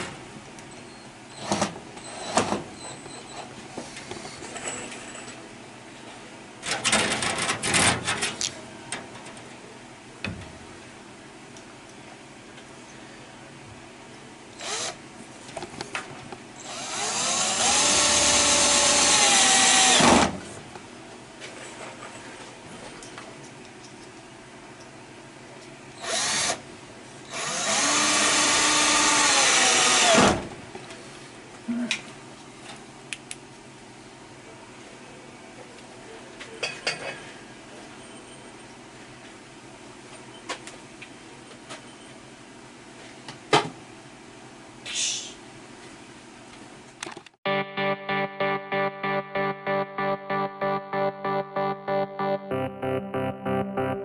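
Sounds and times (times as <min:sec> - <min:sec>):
power drill running: 0:14.6 - 0:15.0, 0:16.6 - 0:20.2, 0:26.0 - 0:26.6, 0:27.3 - 0:30.2.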